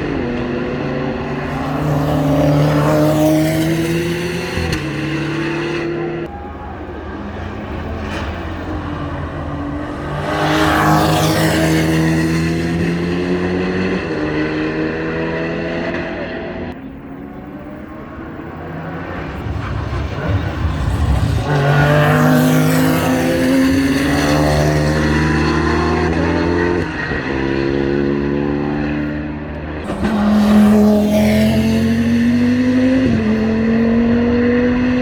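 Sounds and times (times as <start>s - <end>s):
race cars accelerating past: 0.0s - 35.0s.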